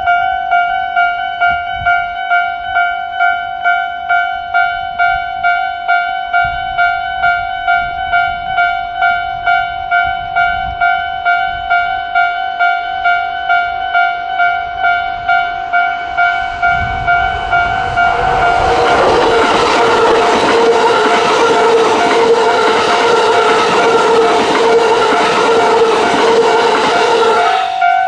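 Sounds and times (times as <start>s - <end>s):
level crossing bell dinging: 0.0s - 18.2s
train passing rumble: 14.4s - 28.0s.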